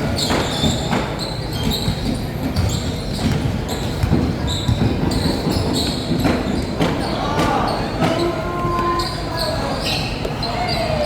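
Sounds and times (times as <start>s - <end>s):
sneakers squeaking: 0.0s - 11.0s
basketball bouncing: 0.2s - 9.0s.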